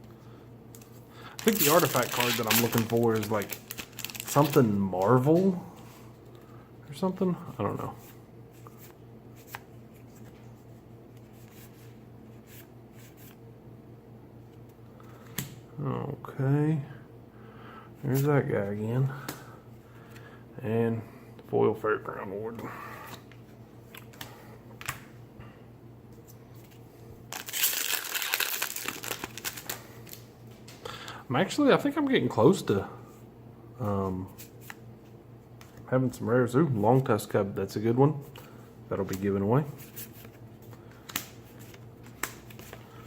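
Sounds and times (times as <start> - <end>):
low electrical hum: 0.0 - 43.0
trading cards being flipped: 0.8 - 5.4
foil wrapper crinkling: 1.2 - 5.5, 27.3 - 30.3.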